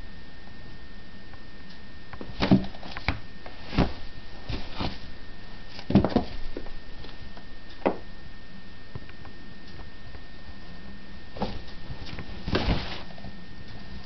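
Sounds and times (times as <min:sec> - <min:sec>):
cat moving knocks and rustles: 0:02.2 - 0:05.1, 0:05.8 - 0:07.2, 0:11.4 - 0:13.3.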